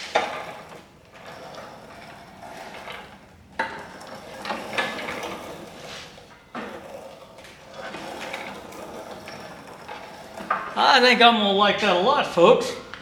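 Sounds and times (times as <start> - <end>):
metal cart rattling and clunking: 1.9 - 10.9.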